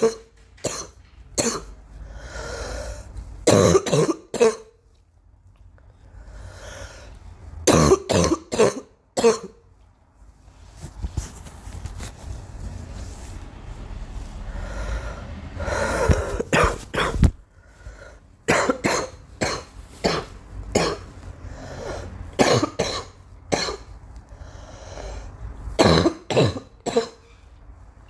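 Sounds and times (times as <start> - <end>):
girl coughing: 0.0 - 1.8, 3.4 - 4.7, 7.7 - 9.6, 16.3 - 17.3, 18.5 - 21.1, 22.4 - 23.9, 25.8 - 27.2.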